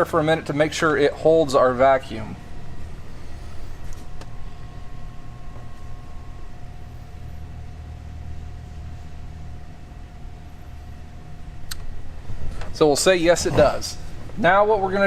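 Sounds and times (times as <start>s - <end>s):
faint steady whine: 0.0s - 15.0s
low mechanical hum: 0.0s - 15.0s
sharp click: 11.6s - 11.9s.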